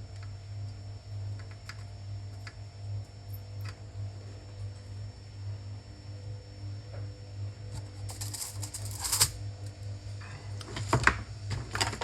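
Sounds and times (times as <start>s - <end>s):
steady low hum: 0.0s - 12.0s
small tools clicking and rattling: 8.1s - 9.4s.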